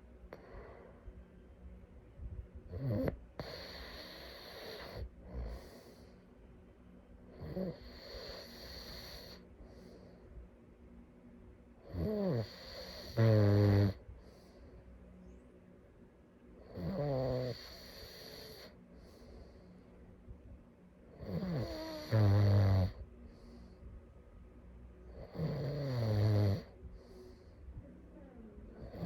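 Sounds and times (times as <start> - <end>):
person snoring: 11.8 - 14.0, 21.2 - 23.0, 25.2 - 26.7.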